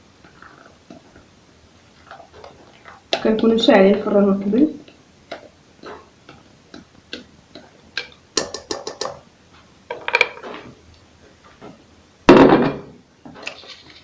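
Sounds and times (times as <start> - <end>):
spatula scraping mixing bowl: 0.2 - 4.2
loud knock: 12.3 - 12.9.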